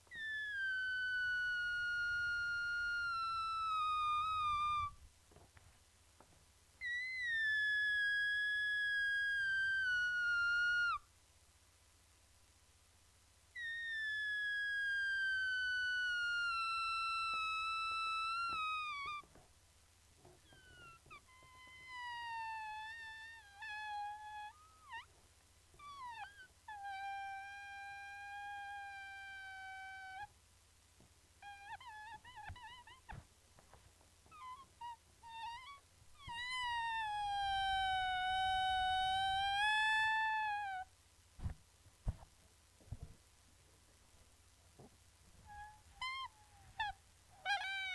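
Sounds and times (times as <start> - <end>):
air squealing out of balloon: 0.0 - 5.0, 6.8 - 11.0, 13.6 - 19.3, 20.4 - 25.1, 25.8 - 30.3, 31.4 - 33.2, 34.3 - 40.9, 45.4 - 47.9
balloon deflating with high whine: 0.0 - 5.0.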